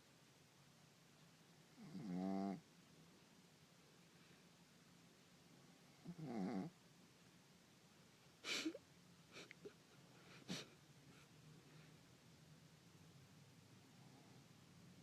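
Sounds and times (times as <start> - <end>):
dog snoring: 1.7 - 2.6, 6.0 - 6.8.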